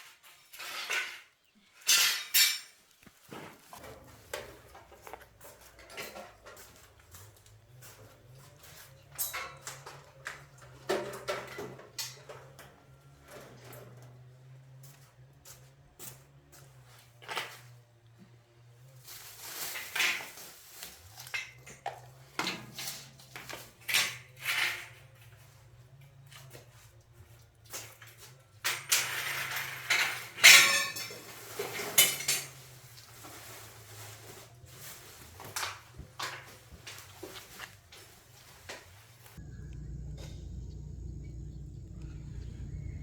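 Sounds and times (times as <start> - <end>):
metal objects clinking: 0.6 - 2.8, 28.0 - 32.8.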